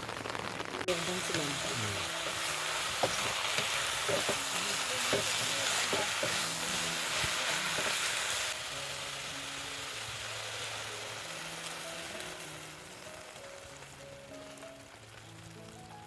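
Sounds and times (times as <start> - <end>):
food sizzling in a pan: 0.0 - 16.0
background music of held notes: 1.2 - 16.0.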